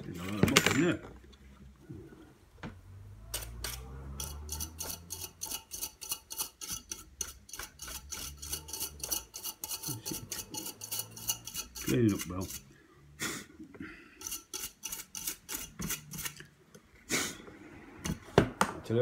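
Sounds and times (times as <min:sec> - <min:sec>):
brush scrubbing fan blades: 0:03.3 - 0:12.8, 0:14.2 - 0:16.5.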